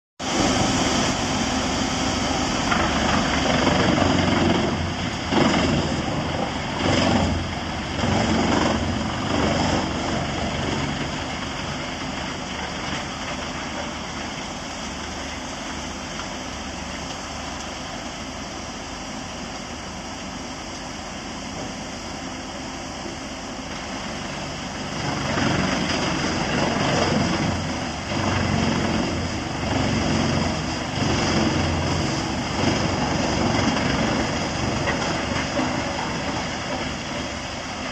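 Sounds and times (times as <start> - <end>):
wood chipper engine running: 0.2 - 37.9.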